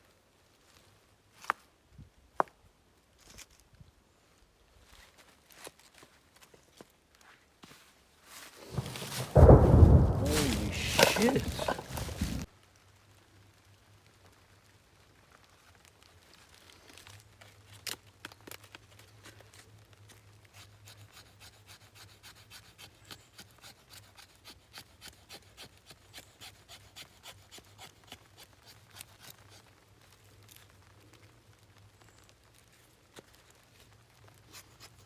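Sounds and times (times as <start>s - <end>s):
short scraping strokes: 8.6s - 12.5s
sharp knock: 8.7s - 12.5s.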